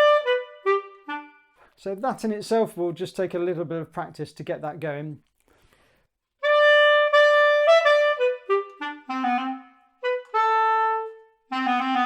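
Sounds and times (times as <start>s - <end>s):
clarinet playing: 0.0s - 1.7s, 6.4s - 12.0s.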